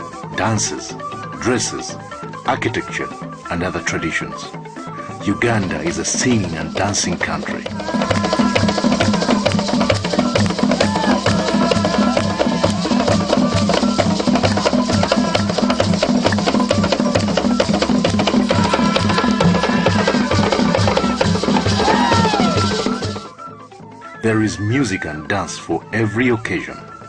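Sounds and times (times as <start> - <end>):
driving drum beat: 5.6 - 23.3.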